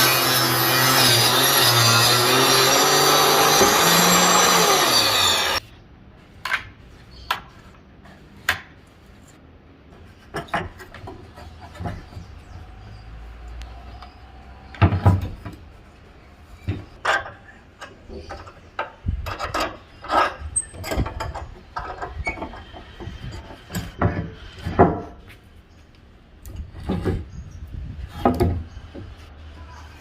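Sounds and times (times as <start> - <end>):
wood scraping: 0.0 - 5.6.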